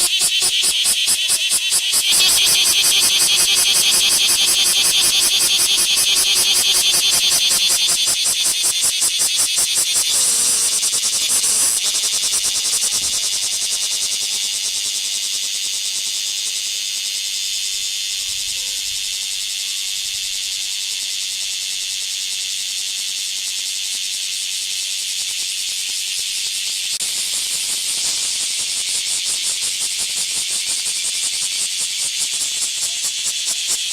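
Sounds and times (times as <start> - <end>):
cicadas buzzing: 0.0 - 33.9.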